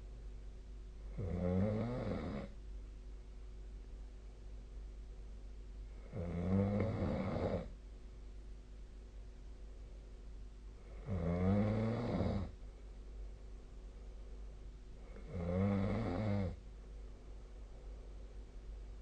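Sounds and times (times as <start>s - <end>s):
steady low hum: 0.0s - 19.0s
person snoring: 1.2s - 2.5s, 6.0s - 7.7s, 10.9s - 12.5s, 15.1s - 16.6s.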